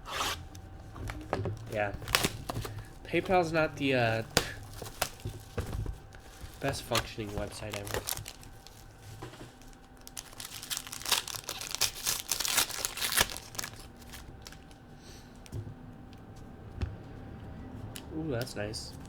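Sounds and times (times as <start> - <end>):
wrappers tearing and crinkling: 0.0 - 14.9.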